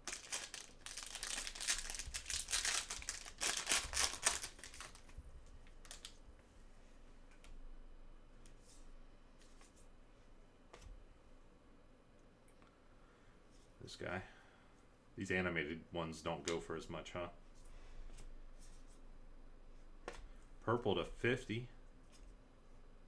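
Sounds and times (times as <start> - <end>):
plastic wrapper tearing and crinkling: 0.0 - 6.2.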